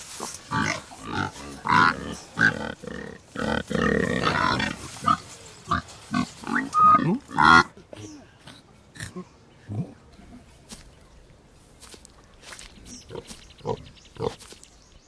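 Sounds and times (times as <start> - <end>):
scuffling: 0.0 - 7.7
pigs grunting and squealing: 0.0 - 7.8.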